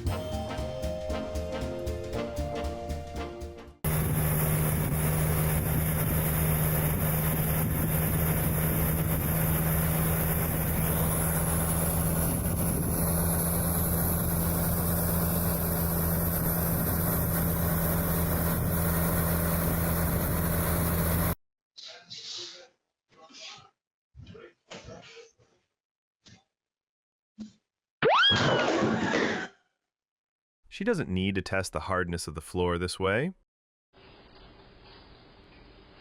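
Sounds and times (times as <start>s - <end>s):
vehicle engine running steadily: 3.8s - 21.4s.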